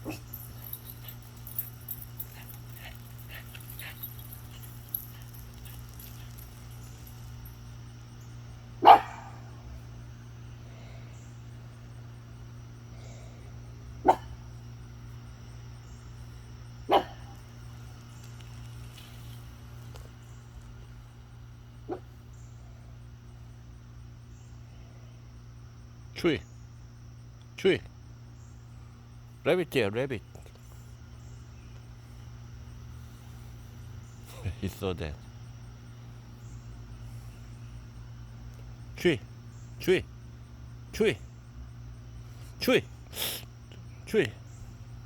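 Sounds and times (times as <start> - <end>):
dog barking: 0.0 - 0.9, 8.8 - 9.5, 14.0 - 14.4, 16.9 - 17.4, 21.9 - 22.2
steady low hum: 0.0 - 45.0.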